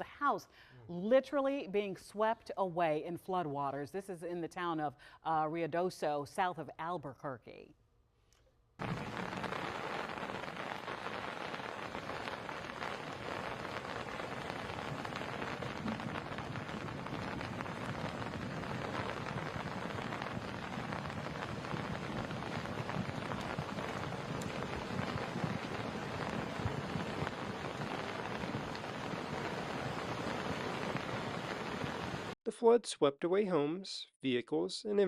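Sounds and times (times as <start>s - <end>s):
floodwater rushing: 8.8s - 32.4s.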